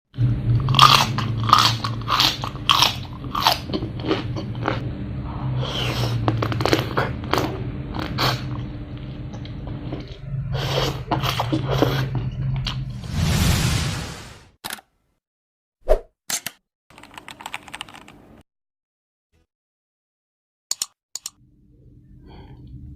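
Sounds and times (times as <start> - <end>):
low hum: 0.1 - 14.4
person chewing crunchy food: 0.5 - 4.8, 5.5 - 12.8.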